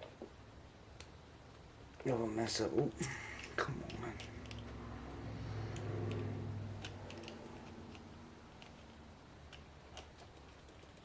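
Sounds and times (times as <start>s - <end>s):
low hum: 3.0s - 9.6s.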